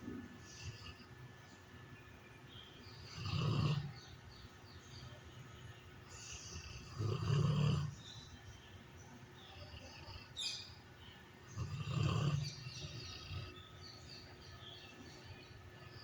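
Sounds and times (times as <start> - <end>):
birds chirping faintly: 0.0 - 16.0
pet snoring: 0.4 - 1.1, 3.0 - 4.0, 6.1 - 8.1, 11.5 - 13.8.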